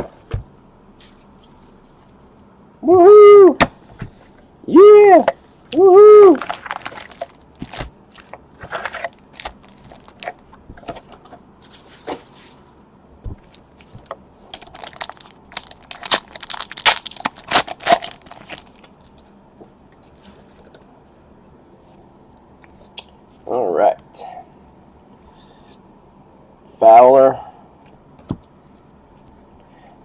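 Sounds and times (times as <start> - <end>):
packs tearing and crinkling: 6.3 - 10.4, 13.9 - 19.2.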